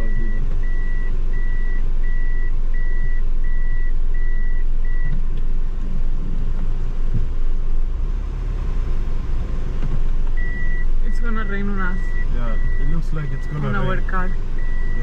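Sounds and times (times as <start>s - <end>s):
vehicle warning beeps: 0.0s - 5.2s, 10.4s - 15.0s
vehicle engine and road rumble: 0.0s - 15.0s.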